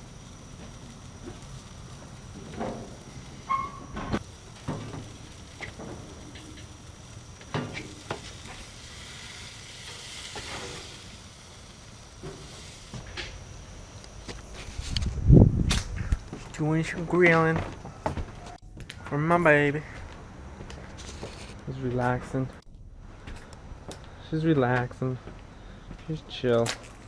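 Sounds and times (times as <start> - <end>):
burgers sizzling on a grill: 0.0 - 15.0.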